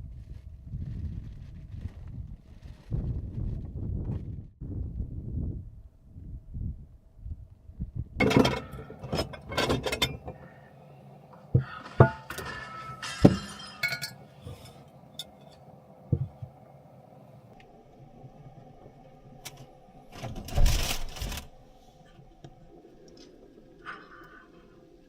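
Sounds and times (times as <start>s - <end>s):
hard objects knocking and clinking: 11.6s - 14.2s.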